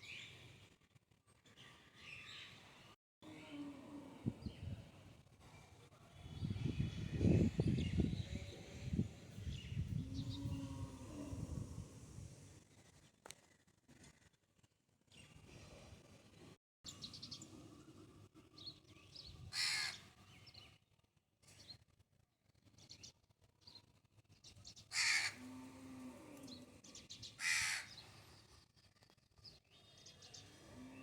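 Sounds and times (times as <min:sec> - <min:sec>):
bird calling loudly: 0:27.4 - 0:27.9.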